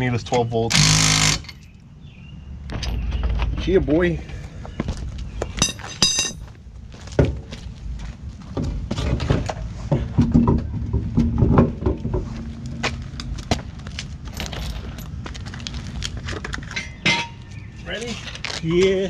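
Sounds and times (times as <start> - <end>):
metallic clinks of tools: 5.6 - 6.4.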